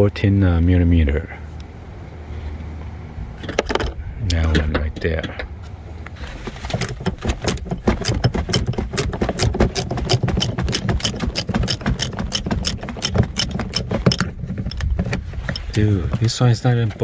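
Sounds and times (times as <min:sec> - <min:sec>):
ratcheting wrench clicking: 0:06.8 - 0:14.9.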